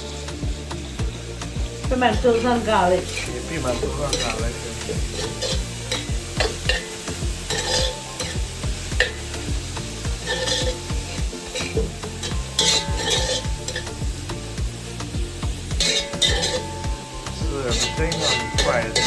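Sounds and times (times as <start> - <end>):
vegetables sizzling in oil: 0.0 - 19.0
spoon scraping pot: 5.0 - 9.3, 10.2 - 14.0, 15.7 - 19.0.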